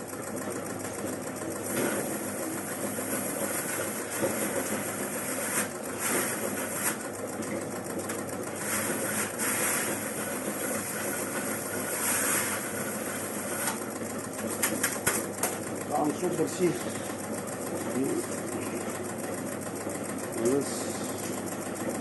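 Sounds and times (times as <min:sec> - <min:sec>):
stripping machine running: 0:00.0 - 0:22.0
leaves scraping in machine: 0:01.6 - 0:07.1, 0:08.6 - 0:14.9.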